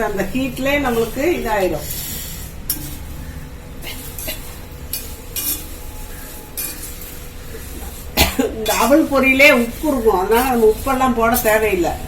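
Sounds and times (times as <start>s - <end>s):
spoon stirring puffed rice: 0.0s - 12.0s.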